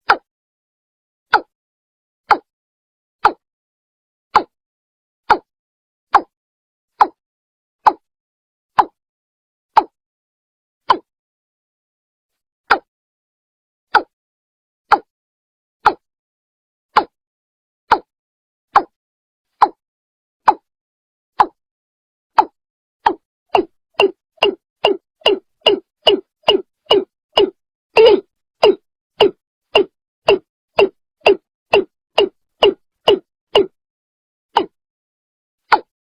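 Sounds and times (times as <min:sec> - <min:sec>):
bird calling hollow notes: 0:23.5 - 0:33.7.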